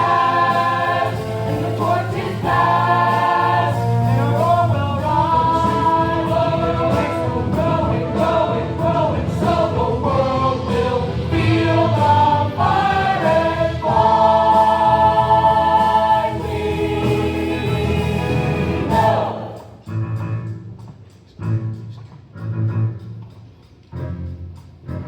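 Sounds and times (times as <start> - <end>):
choir singing in close harmony: 0.0 - 19.8.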